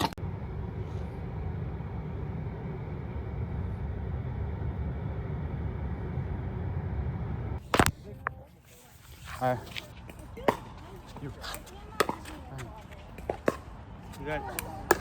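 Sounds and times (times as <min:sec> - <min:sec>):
car driving rumble: 0:00.0 - 0:08.4.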